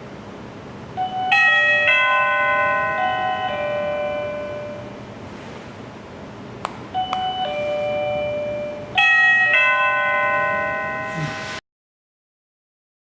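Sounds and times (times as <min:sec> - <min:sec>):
doorbell ding-dong chime: 0:01.0 - 0:05.0, 0:07.0 - 0:11.6
doorbell sharp clicks: 0:07.0 - 0:09.9.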